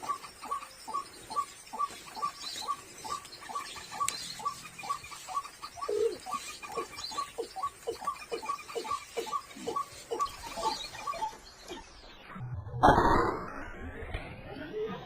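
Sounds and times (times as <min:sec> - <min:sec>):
short chirping calls: 0:00.0 - 0:12.2.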